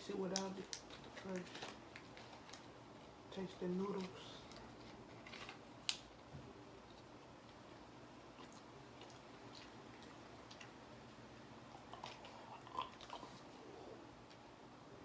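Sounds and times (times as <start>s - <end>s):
chewing snack noodles: 6.8s - 14.4s.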